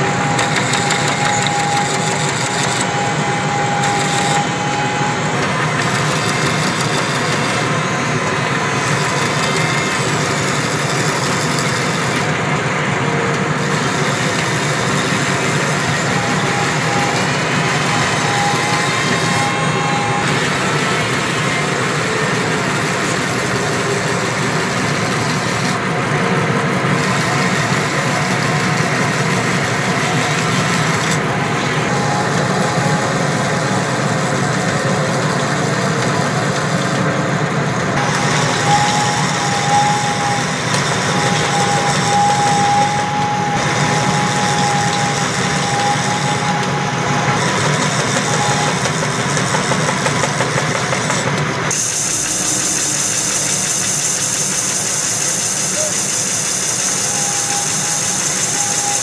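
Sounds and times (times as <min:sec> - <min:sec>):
thin whistling tone: 0:00.0 - 0:08.0, 0:14.2 - 0:22.5, 0:38.0 - 0:48.9, 0:52.1 - 0:59.0
lathe running: 0:00.0 - 0:59.0.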